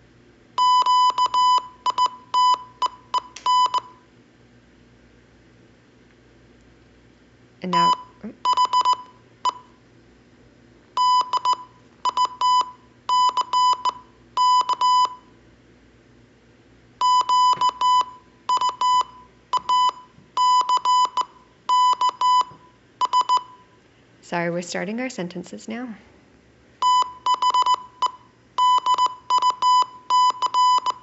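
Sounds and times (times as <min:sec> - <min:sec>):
morse code beeps: 0:00.6 - 0:04.0, 0:07.7 - 0:09.7, 0:11.0 - 0:15.3, 0:17.0 - 0:23.7, 0:26.8 - 0:31.0.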